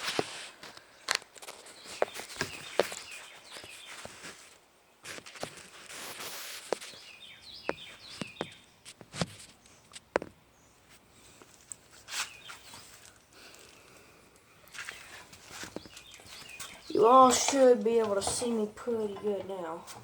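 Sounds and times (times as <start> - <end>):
footsteps: 14.7 - 20.0.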